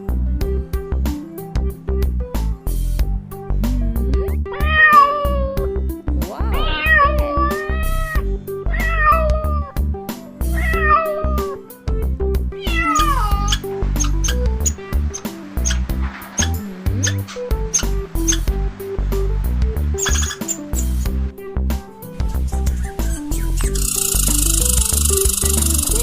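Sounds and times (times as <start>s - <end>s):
background music with steady beat: 0.0s - 26.0s
cat meowing: 4.4s - 5.7s, 6.4s - 9.8s, 10.5s - 11.6s, 12.6s - 15.8s, 16.4s - 18.4s, 20.0s - 20.9s.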